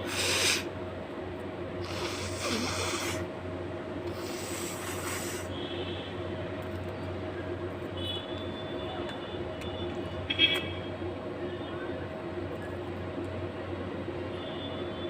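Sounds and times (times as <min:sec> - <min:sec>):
person breathing forcefully through nose: 0:00.0 - 0:00.7, 0:01.8 - 0:03.3, 0:04.1 - 0:05.5.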